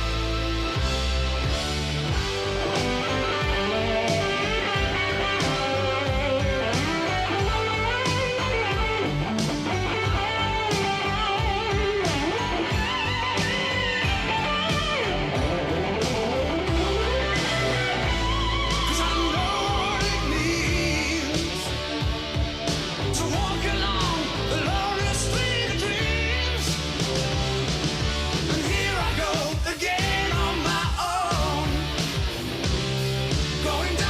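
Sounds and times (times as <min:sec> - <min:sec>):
steady drum beat: 0:00.0 - 0:34.0
lead electric guitar bending lines: 0:01.3 - 0:24.0.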